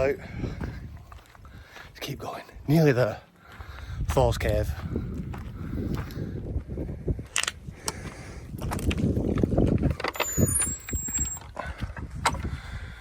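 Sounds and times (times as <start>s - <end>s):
wind rumbling on microphone: 0.0s - 2.8s, 3.4s - 13.0s
footsteps on a path: 0.0s - 13.0s
thin high squeak: 10.1s - 11.5s.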